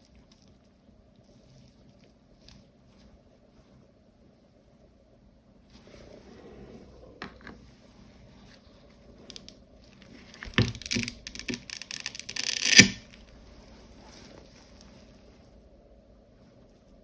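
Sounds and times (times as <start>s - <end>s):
plastic crackling and snapping: 9.3s - 9.6s, 10.3s - 13.3s.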